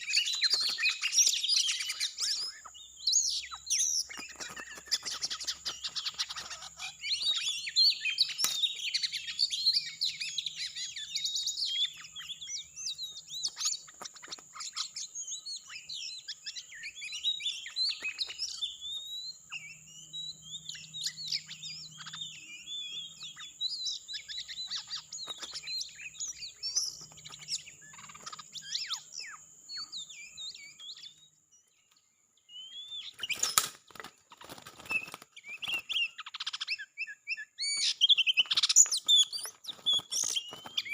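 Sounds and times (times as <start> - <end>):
bird whistles and chirps: 0.0 - 40.9.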